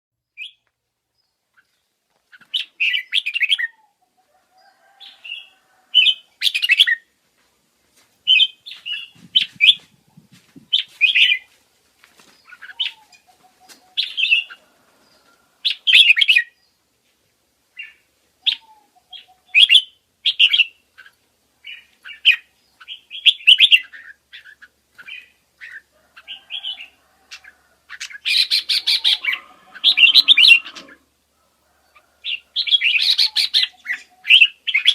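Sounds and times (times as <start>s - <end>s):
parrotlets chirping: 21.7s - 31.1s, 31.7s - 34.9s.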